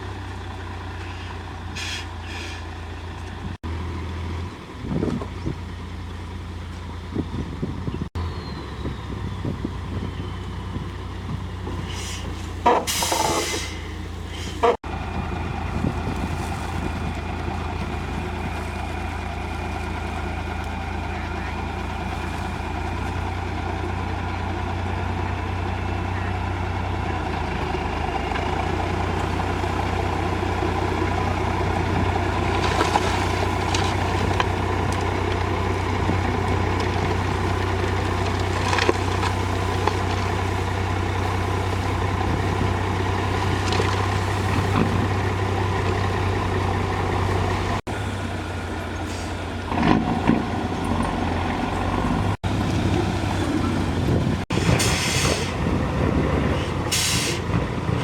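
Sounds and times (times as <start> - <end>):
heavy diesel engines humming: 0.0 - 58.0
short hisses: 1.8 - 2.7, 54.6 - 55.6.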